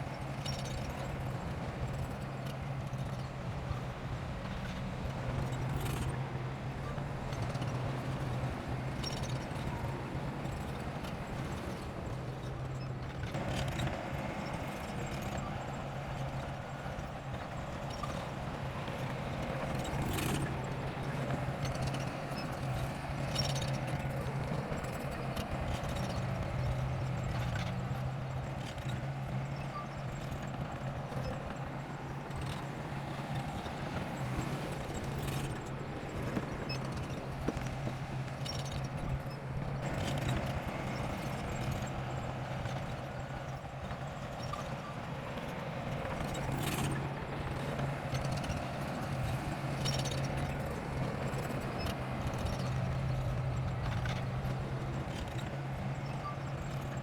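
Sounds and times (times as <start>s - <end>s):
bulldozer engine running: 0.0s - 57.0s.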